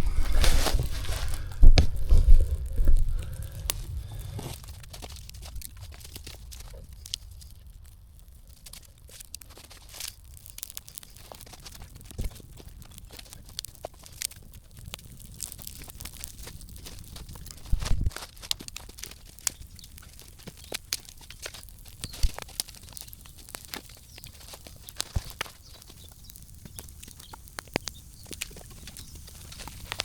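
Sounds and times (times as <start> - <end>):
low rumble: 0.0 - 7.0
dry leaves and twigs cracking: 0.0 - 30.0.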